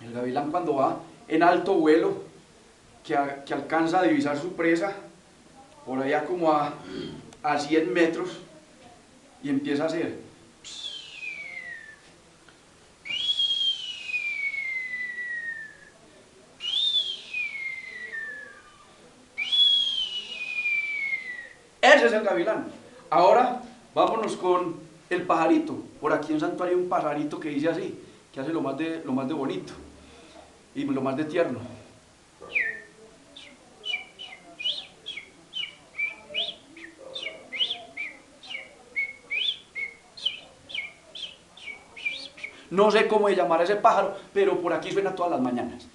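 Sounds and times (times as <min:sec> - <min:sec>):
man whistling bird chirps: 0:10.7 - 0:12.1, 0:13.0 - 0:15.9, 0:16.6 - 0:18.8, 0:19.4 - 0:21.6, 0:32.5 - 0:42.6.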